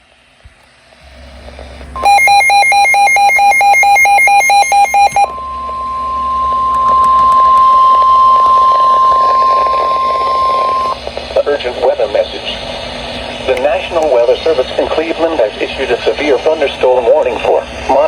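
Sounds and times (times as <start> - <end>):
buzzy electronic data tones: 2.0 - 11.0
steady warning alarm tone: 2.0 - 11.0.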